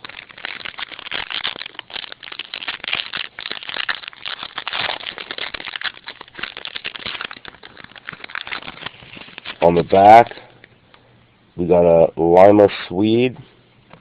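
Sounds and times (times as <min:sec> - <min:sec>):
cards rustling: 0:00.0 - 0:10.4
wrapper crinkling: 0:00.0 - 0:10.5.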